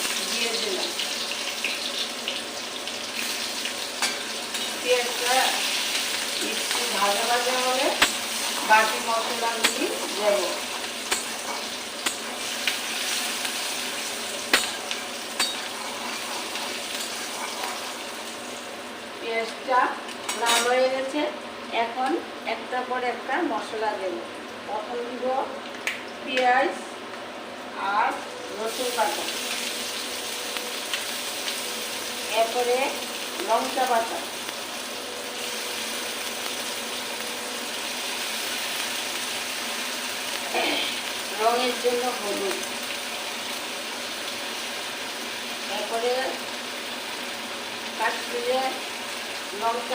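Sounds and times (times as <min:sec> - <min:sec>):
onion sizzling in hot oil: 0:00.0 - 0:26.4, 0:27.7 - 0:49.9.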